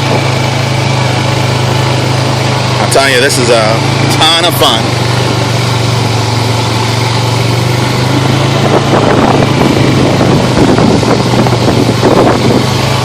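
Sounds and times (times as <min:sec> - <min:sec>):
atv engine running: 0:00.0 - 0:13.0
wind and ride noise: 0:00.0 - 0:13.0.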